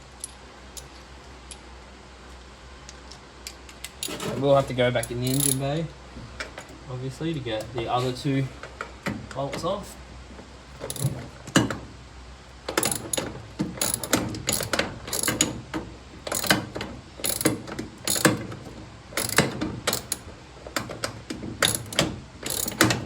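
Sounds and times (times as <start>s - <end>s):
ratchet wrench clicking: 5.0s - 5.6s, 10.9s - 11.2s, 12.8s - 15.6s, 16.3s - 18.4s, 19.2s - 20.3s, 21.6s - 23.0s.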